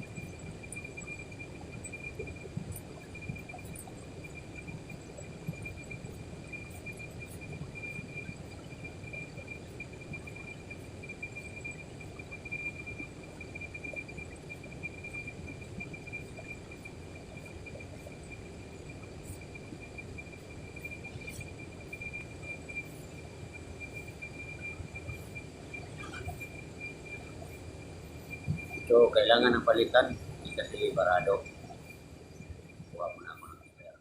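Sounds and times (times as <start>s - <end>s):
cricket trilling: 0.0s - 34.0s.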